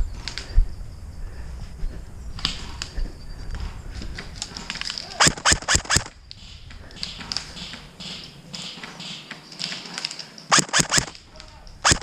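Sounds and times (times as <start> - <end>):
airsoft gun firing: 5.2 - 6.1, 10.5 - 11.2.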